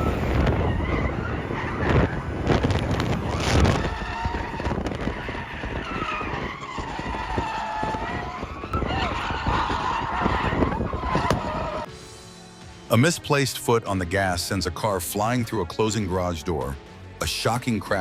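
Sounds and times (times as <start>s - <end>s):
car tyres squealing: 0.0s - 11.9s.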